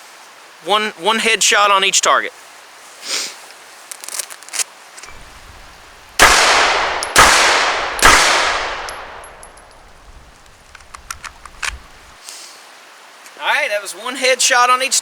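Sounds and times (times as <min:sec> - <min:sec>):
faint clicks: 0:05.0 - 0:12.2
pistol shots with echo: 0:05.1 - 0:12.1.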